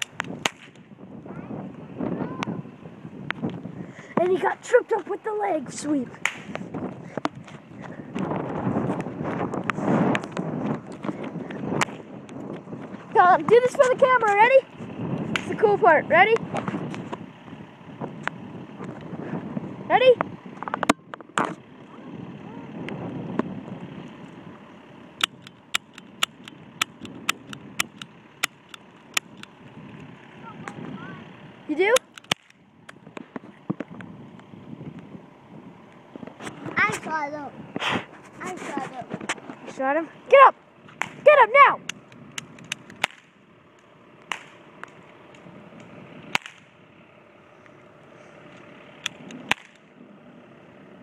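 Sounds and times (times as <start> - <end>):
cap gun pops: 0.0 - 0.8, 6.2 - 6.6, 32.0 - 32.6, 42.4 - 43.3, 44.3 - 45.0, 46.3 - 46.6, 49.1 - 49.8
cap guns firing: 0.0 - 0.8, 6.2 - 6.5, 44.3 - 44.6, 46.4 - 46.7, 49.5 - 49.8.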